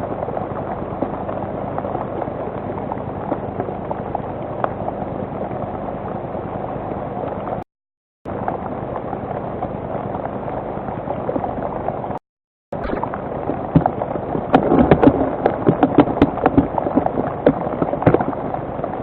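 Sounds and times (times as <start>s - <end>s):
steady rain falling: 0.0s - 7.6s, 8.3s - 12.2s, 12.8s - 19.0s.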